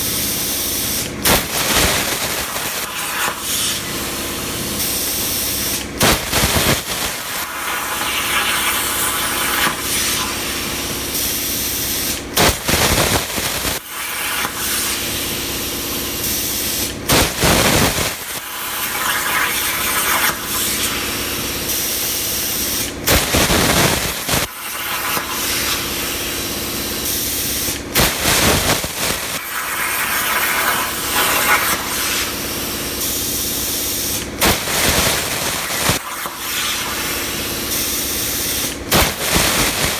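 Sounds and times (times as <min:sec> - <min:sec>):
plasma cutter hissing: 0:00.2 - 0:39.9.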